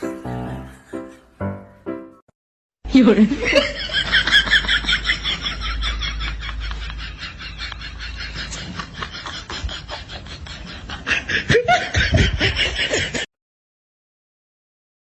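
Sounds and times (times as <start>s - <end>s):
person snickering and laughing: 3.4s - 13.3s.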